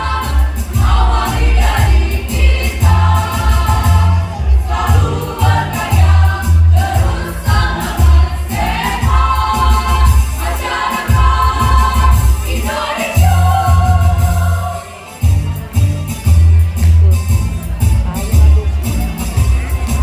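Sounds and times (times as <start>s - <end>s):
mixed choir singing: 0.0s - 15.1s
backing music with pulsing bass: 0.0s - 20.0s.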